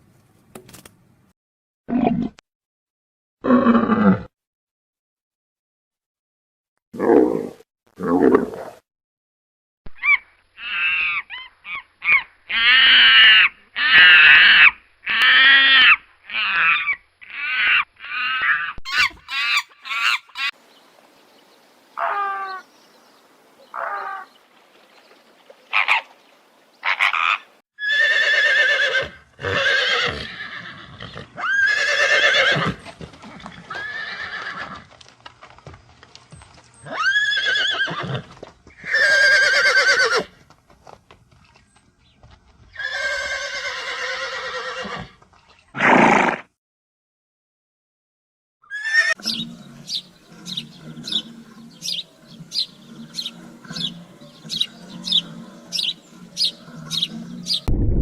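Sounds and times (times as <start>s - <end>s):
horse whinnies: 26.8s - 34.9s, 36.8s - 40.3s, 42.7s - 45.2s, 45.8s - 46.5s, 48.6s - 57.7s
short repeated animal calls: 48.6s - 57.7s.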